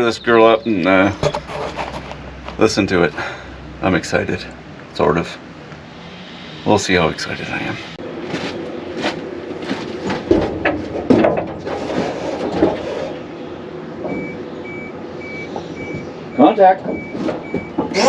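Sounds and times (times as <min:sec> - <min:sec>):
knocks and clatter in truck: 0:08.2 - 0:13.4, 0:14.0 - 0:18.0
dashboard warning chime beeping: 0:14.1 - 0:18.0.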